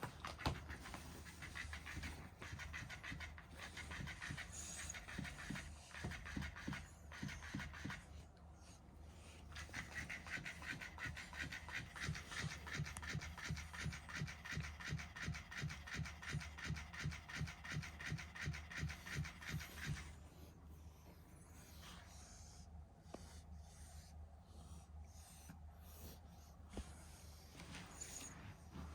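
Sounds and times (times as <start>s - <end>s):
toy motor whirring clatter: 0.0s - 8.1s, 9.4s - 20.2s.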